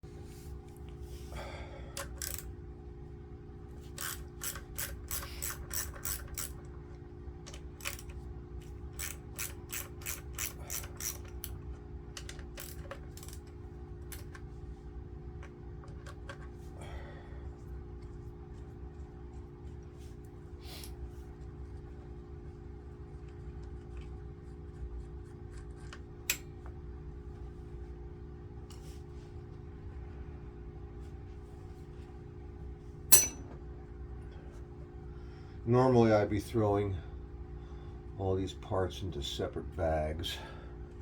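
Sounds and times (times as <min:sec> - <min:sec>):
steady low hum: 0:00.0 - 0:41.0
socket ratchet clicking: 0:04.0 - 0:06.6, 0:09.0 - 0:11.5.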